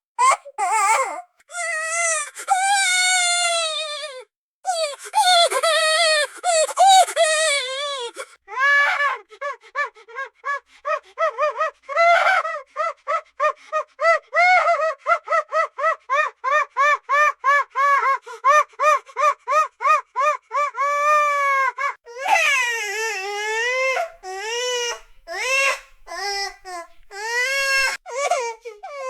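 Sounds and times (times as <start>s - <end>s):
toddler crying: 0.2s - 9.0s, 22.1s - 29.0s.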